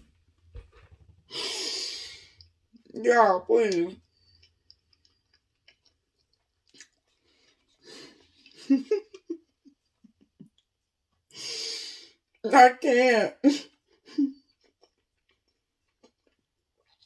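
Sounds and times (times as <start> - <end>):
person chewing: 4.3 - 8.7, 14.5 - 17.0.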